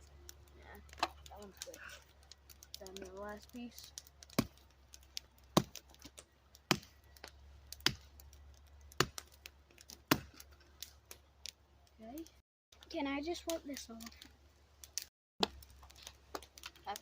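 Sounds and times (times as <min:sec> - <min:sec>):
axe chopping wood: 0:04.3 - 0:04.7, 0:05.4 - 0:07.0, 0:07.8 - 0:08.1, 0:08.9 - 0:10.5.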